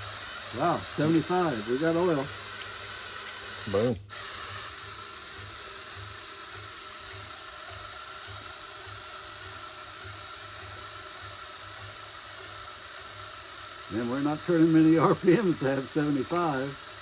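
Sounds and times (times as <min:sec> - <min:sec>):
oil pump whirring: 0:00.0 - 0:17.0.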